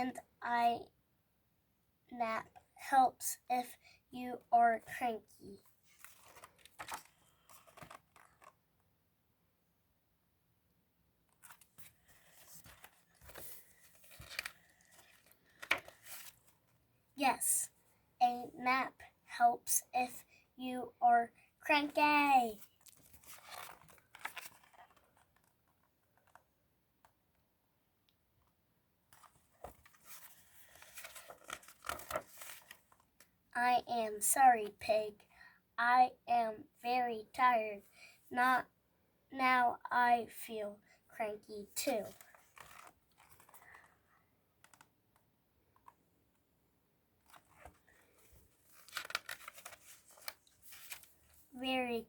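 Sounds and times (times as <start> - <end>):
paper rustling: 5.8 - 8.6, 11.3 - 16.7, 22.5 - 26.4, 29.1 - 33.0, 42.0 - 43.9, 47.2 - 51.5.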